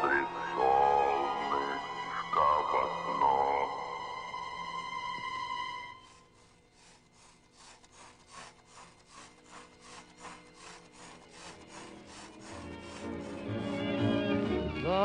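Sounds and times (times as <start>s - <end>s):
steady high tone: 0.0s - 6.2s
rhythmic rasping strokes: 0.0s - 14.6s.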